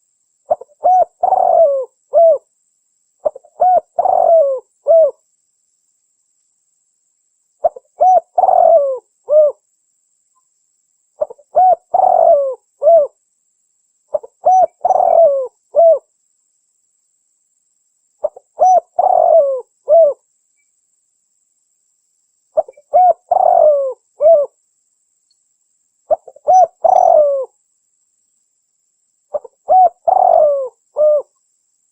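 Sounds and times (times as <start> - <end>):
dove cooing: 0.5 - 2.5, 3.2 - 5.2, 7.6 - 9.6, 11.2 - 13.2, 14.1 - 16.1, 18.2 - 20.2, 22.6 - 24.6, 26.1 - 27.6, 29.3 - 31.4.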